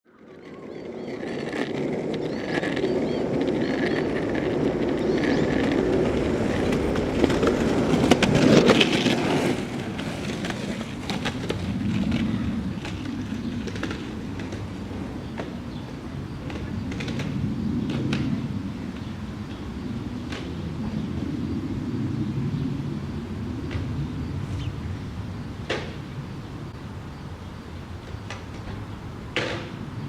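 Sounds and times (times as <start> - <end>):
wheels rumbling over rough ground: 0.1 - 21.7.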